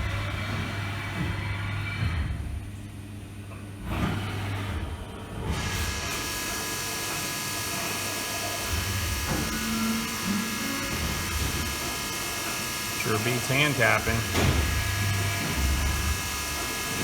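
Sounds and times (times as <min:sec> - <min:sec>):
machine spindle whining: 0:05.6 - 0:17.0.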